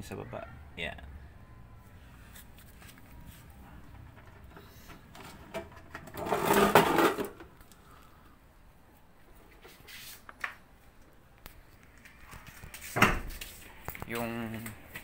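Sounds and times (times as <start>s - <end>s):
clattering scraping noise: 3.8s - 7.5s.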